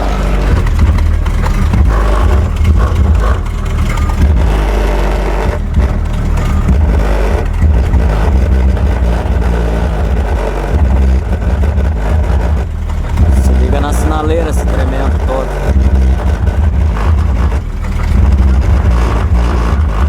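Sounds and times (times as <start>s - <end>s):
car stereo music with deep bass: 0.0s - 20.0s.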